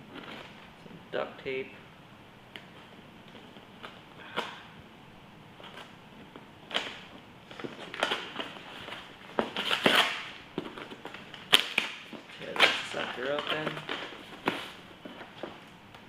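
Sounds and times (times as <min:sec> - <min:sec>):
cardboard package being handled: 0:06.7 - 0:15.6.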